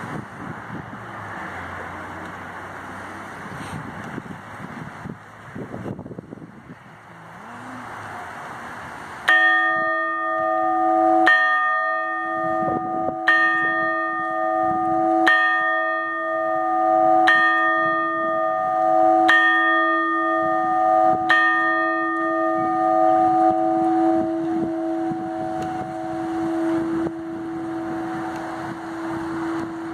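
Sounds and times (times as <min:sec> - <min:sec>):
church bell tolling: 0:09.3 - 0:29.9.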